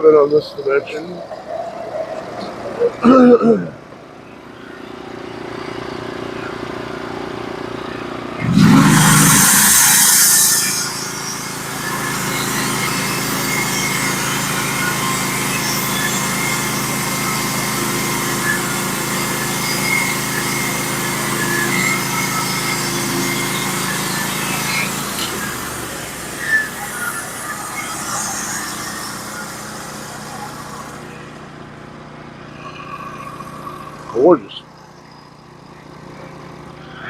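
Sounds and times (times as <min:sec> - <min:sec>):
sawmill engine humming: 0:03.9 - 0:37.0
loud rush: 0:08.4 - 0:12.1.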